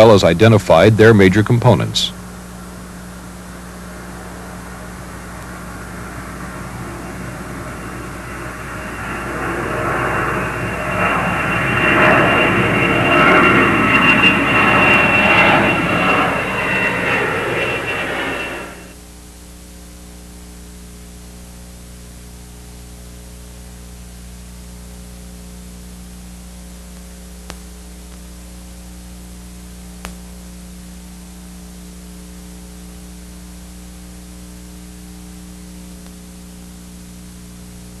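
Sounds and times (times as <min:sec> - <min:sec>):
constant hiss: 0:00.0 - 0:08.9
electrical hum: 0:00.0 - 0:38.0.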